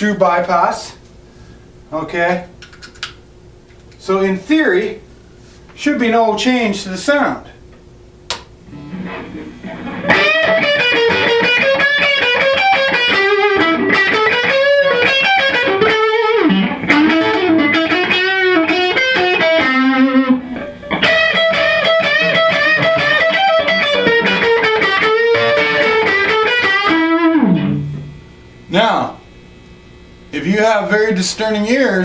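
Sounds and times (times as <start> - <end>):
electric guitar lead with bent notes: 8.7 - 28.2.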